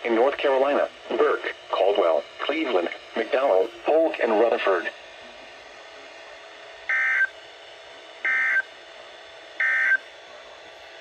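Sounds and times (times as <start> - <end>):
low broadcast hiss: 0.0 - 11.0
electronic data bursts: 6.9 - 7.3, 8.2 - 8.7, 9.6 - 10.0.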